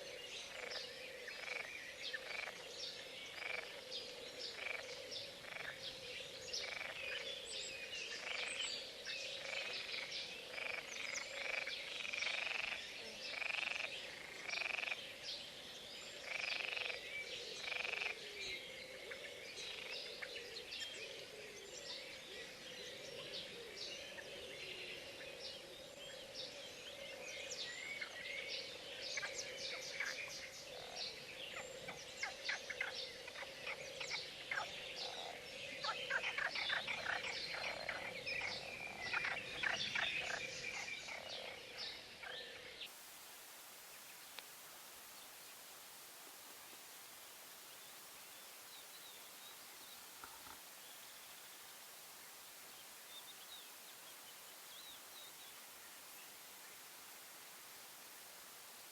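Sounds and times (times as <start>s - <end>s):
frog chorus: 0.0s - 58.9s
loud frog croaks: 10.5s - 15.0s, 16.2s - 17.0s, 17.6s - 18.2s
birds chirping: 42.9s - 58.9s.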